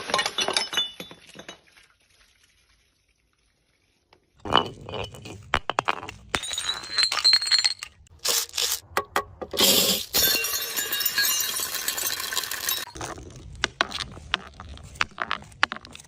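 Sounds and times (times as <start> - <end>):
glass breaking: 0.0 - 1.6, 4.4 - 8.7, 9.6 - 13.0
glass bottles clinking: 0.0 - 1.7, 4.4 - 8.1, 9.6 - 13.2
glass shards tinkling: 9.6 - 12.9.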